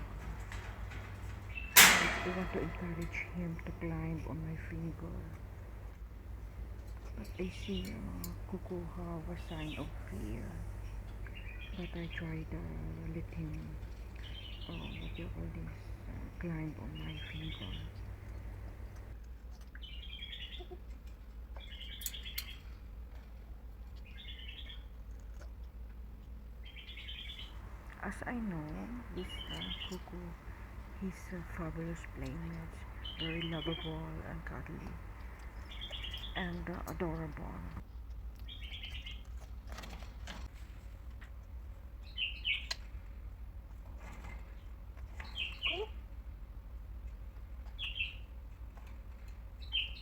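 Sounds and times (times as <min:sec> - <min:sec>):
sharp clicks: 0:00.0 - 0:08.7, 0:27.5 - 0:37.8
low steady hum: 0:00.0 - 0:19.2, 0:27.2 - 0:37.9
parrot chirping calls: 0:27.1 - 0:37.8.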